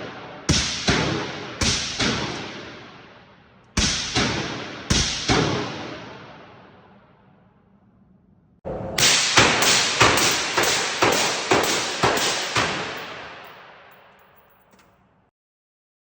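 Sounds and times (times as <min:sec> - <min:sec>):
gunshot echo: 0:00.0 - 0:06.7, 0:09.0 - 0:14.5.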